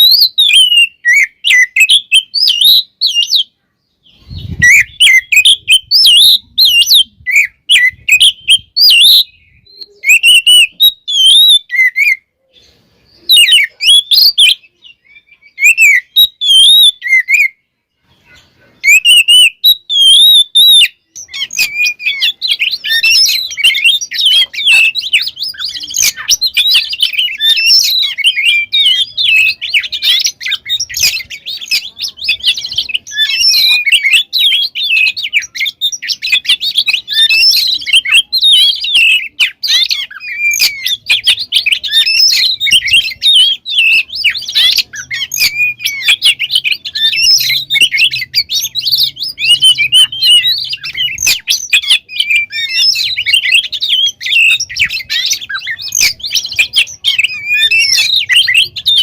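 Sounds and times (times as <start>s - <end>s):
bird singing varied whistles: 0.0s - 3.5s, 4.1s - 17.7s, 18.8s - 59.0s.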